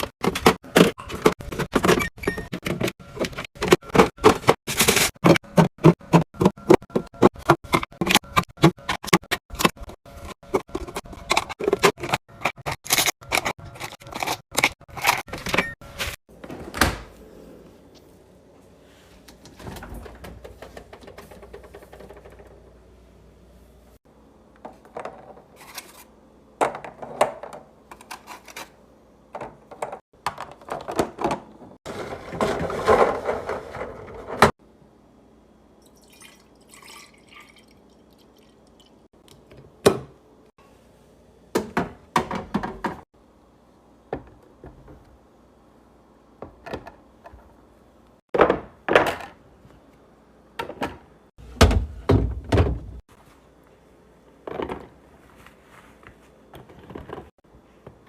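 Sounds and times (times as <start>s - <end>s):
food containers knocking and clattering: 0.0s - 15.6s, 19.6s - 22.6s, 29.3s - 34.6s, 41.6s - 43.1s.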